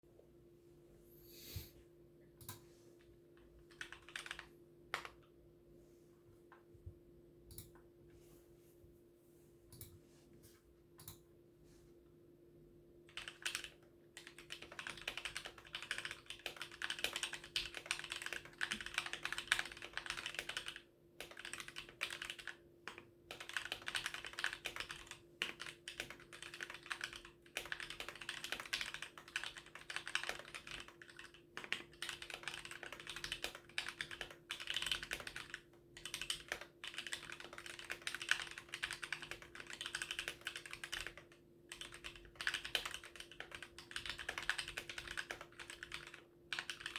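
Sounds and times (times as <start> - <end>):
typing on mechanical keyboard: 3.7 - 5.2, 13.1 - 46.9.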